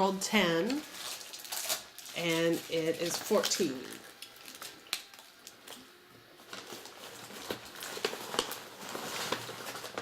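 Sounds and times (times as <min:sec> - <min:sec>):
rustling: 0:06.4 - 0:10.0.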